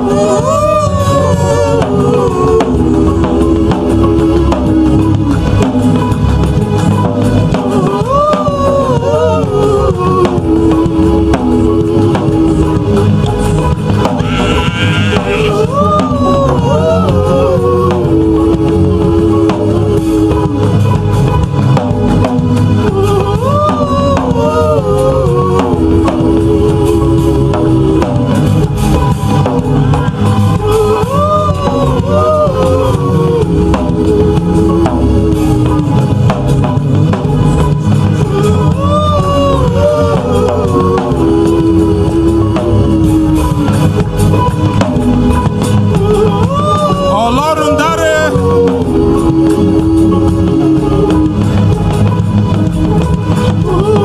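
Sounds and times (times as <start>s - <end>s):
gospel singing: 0.0s - 54.0s
steady drum beat: 0.0s - 54.0s.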